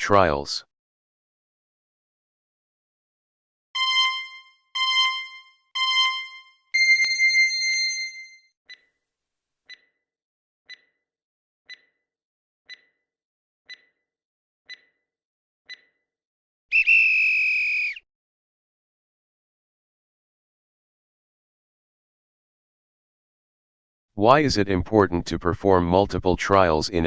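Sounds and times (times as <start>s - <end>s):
timer ticks: 3.8s - 7.3s, 9.7s - 10.0s, 10.7s - 11.0s, 11.7s - 12.0s, 12.7s - 13.0s, 13.7s - 14.0s, 14.7s - 15.0s, 15.7s - 16.0s
short electronic beeps: 3.8s - 8.8s.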